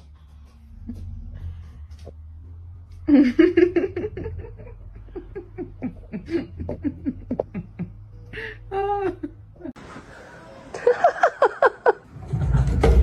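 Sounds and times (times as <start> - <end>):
person laughing: 3.1 - 9.8, 10.7 - 12.1.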